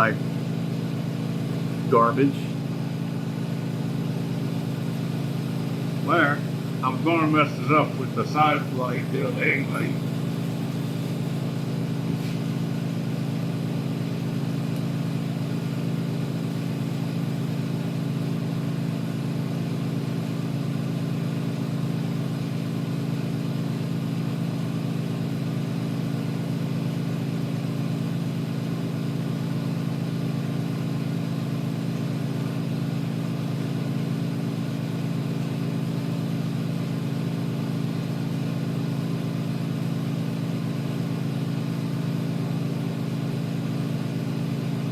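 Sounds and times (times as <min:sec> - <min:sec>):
burners and blower humming: 0:00.0 - 0:20.8.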